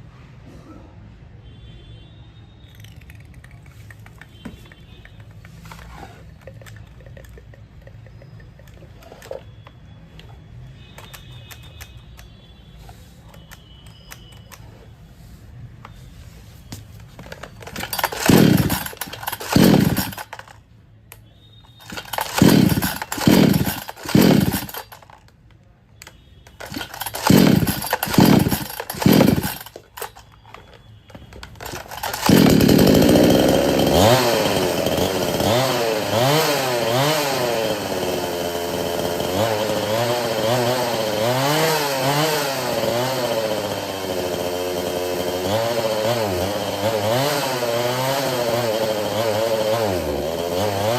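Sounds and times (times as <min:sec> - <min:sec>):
chainsaw recoil starter yanks: 0:05.2 - 0:09.6, 0:17.0 - 0:20.6, 0:21.8 - 0:25.4, 0:26.0 - 0:50.9
chainsaw engine running unevenly: 0:17.2 - 0:20.5, 0:21.8 - 0:25.2, 0:26.6 - 0:30.2, 0:31.3 - 0:50.9.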